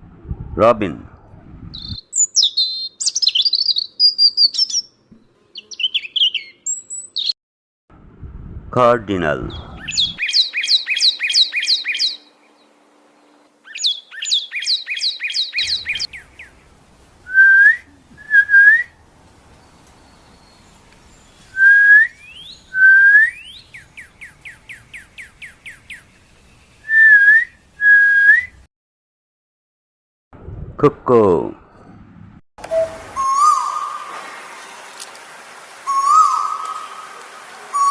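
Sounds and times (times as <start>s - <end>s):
cardinal singing whistles: 17.3s - 19.0s, 21.5s - 23.8s, 26.8s - 28.6s, 32.6s - 34.0s.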